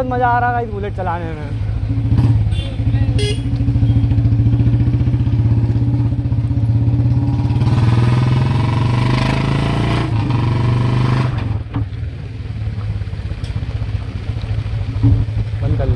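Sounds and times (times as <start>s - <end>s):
motorcycle engine thumping: 11.3s - 14.0s, 14.7s - 15.9s.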